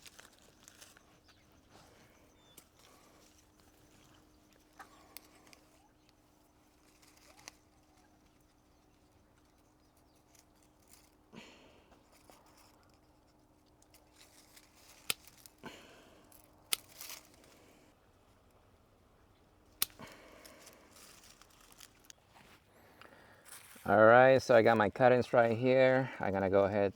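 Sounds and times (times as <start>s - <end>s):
leaves and branches rustling: 0.0s - 26.9s
pruning shears snipping: 4.8s - 5.7s, 13.8s - 15.6s, 16.3s - 17.5s, 19.7s - 22.2s.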